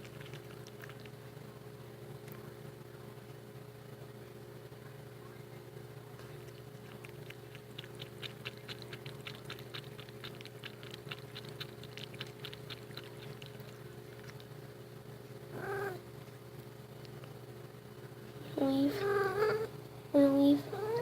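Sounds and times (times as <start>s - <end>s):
cat lapping water: 0.0s - 1.6s, 6.0s - 19.4s
cat meowing: 15.5s - 16.0s, 18.9s - 19.7s, 20.7s - 21.0s.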